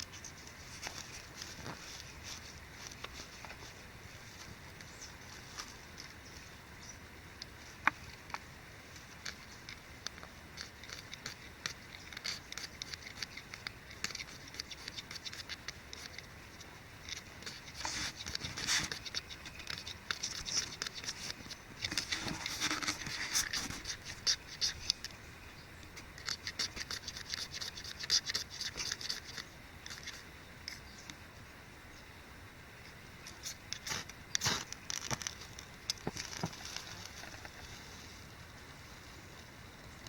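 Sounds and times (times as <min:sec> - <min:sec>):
wood clicking and scratching: 0:07.8 - 0:25.2, 0:26.0 - 0:30.8
wood scraping: 0:10.5 - 0:25.2.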